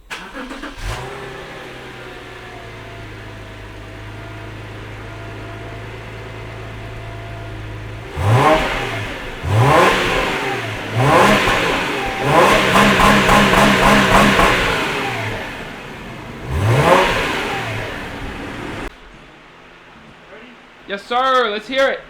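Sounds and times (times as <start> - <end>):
car engine idling and revving: 0.0 - 18.9.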